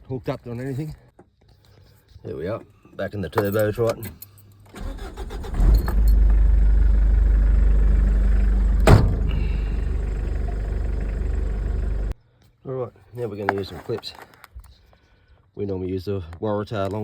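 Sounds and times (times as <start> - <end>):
diesel engine starting and running: 4.8 - 12.2
sharp clunk: 7.8 - 12.1.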